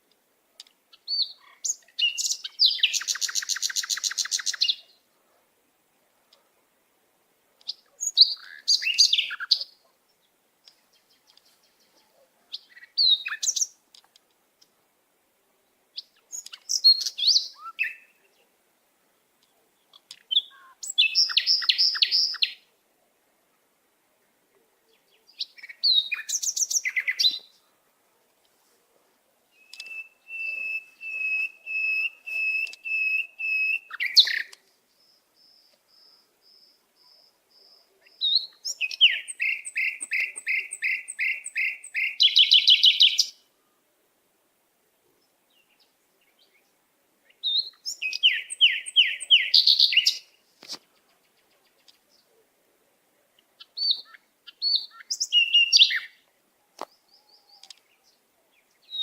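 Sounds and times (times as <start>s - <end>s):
songbird trilling: 1.0s - 4.9s, 7.7s - 9.7s, 20.0s - 22.6s, 29.5s - 34.6s, 37.6s - 43.4s, 47.4s - 50.3s, 53.6s - 56.2s.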